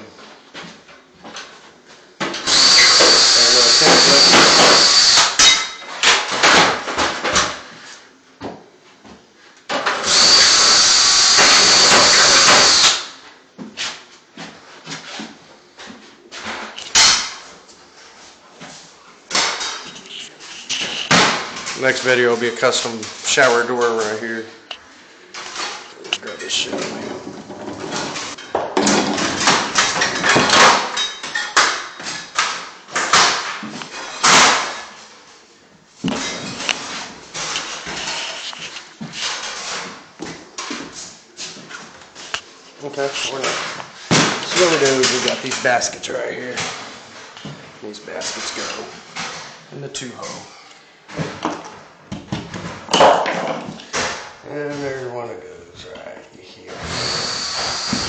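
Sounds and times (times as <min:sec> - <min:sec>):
power drill boring holes: 0:02.4 - 0:05.4, 0:10.0 - 0:13.1, 0:56.7 - 0:58.0
hard parts knocking and clattering: 0:25.4 - 0:34.9
knocks and scrapes: 0:36.0 - 0:42.4.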